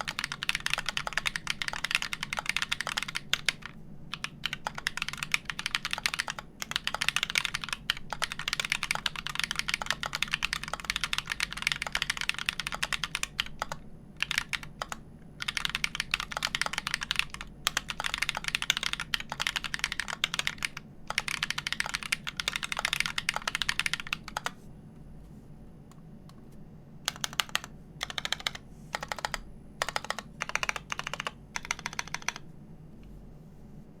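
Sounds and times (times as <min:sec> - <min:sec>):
fast typing on mechanical keyboard: 0:00.0 - 0:24.6, 0:27.1 - 0:32.4.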